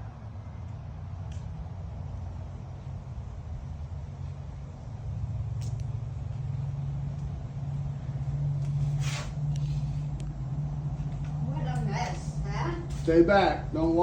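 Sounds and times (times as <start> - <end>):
vehicle engine humming: 0.0 - 14.0
short hiss: 8.7 - 10.1.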